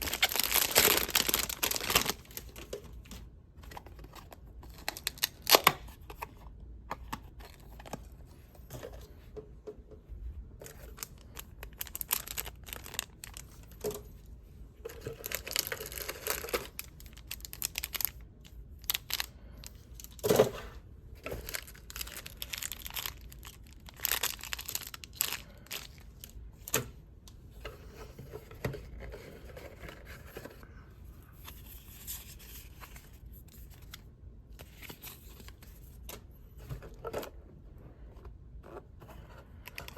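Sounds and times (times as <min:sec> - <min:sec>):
plastic wrap ripping and rustling: 0:00.0 - 0:02.6, 0:11.0 - 0:13.5, 0:15.2 - 0:18.2, 0:21.4 - 0:26.0.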